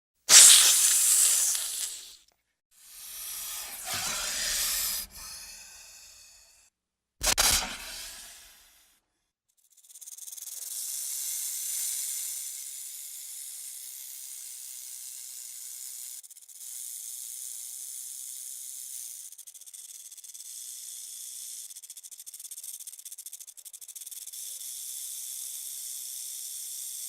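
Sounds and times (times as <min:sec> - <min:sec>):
snake hissing: 0:00.3 - 0:02.2, 0:02.8 - 0:06.6, 0:07.2 - 0:08.8.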